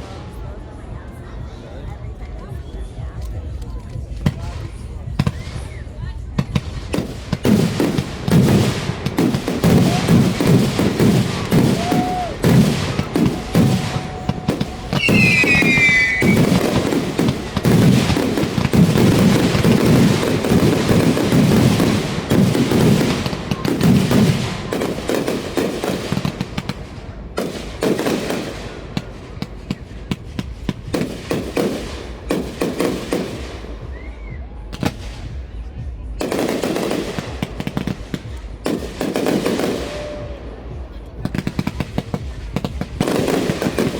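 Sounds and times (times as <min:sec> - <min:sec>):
fireworks bursting and crackling: 0:03.1 - 0:43.9
whistling firework shell: 0:11.4 - 0:16.9.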